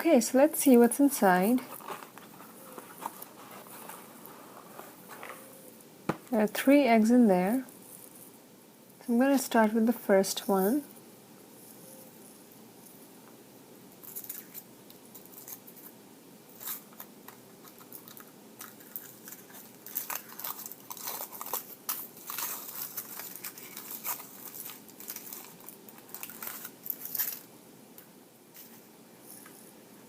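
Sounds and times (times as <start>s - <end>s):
foil wrapper crinkling and tearing: 16.6s - 27.5s.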